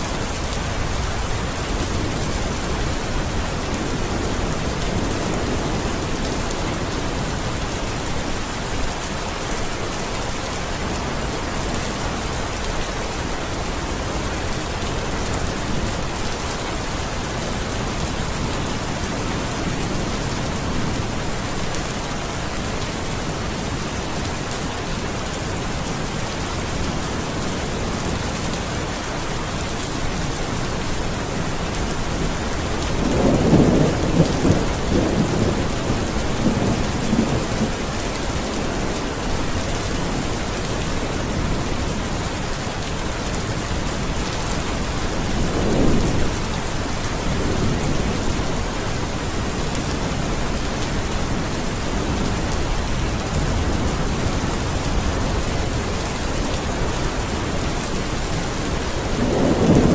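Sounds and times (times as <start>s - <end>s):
heavy rain pattering: 0.0s - 59.9s
distant thunder rumble: 32.1s - 37.9s, 58.9s - 59.9s.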